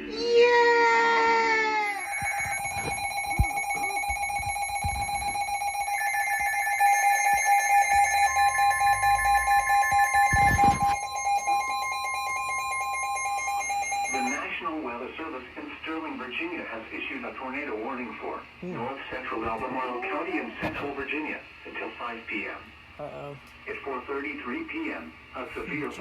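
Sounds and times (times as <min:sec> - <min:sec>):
higher alarm tone: 0:00.0 - 0:14.4
harsh alarm tone over radio: 0:00.0 - 0:14.5.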